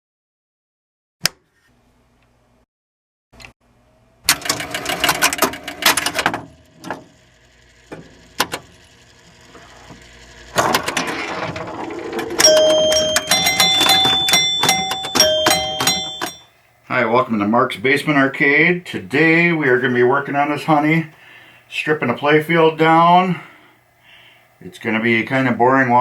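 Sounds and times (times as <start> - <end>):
mechanical clicking and rattling: 4.3 - 12.5.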